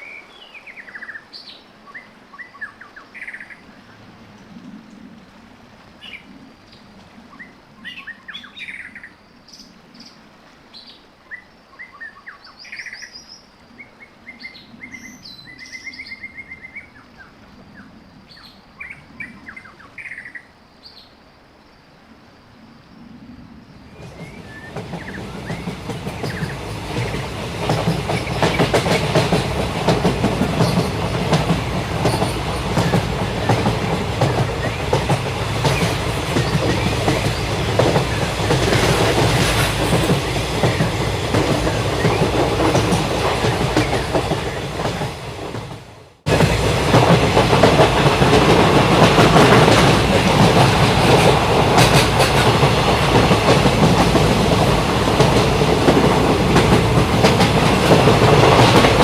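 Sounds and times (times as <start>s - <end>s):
train rumble: 23.2s - 59.0s
train wheels clickety-clack: 23.9s - 59.0s.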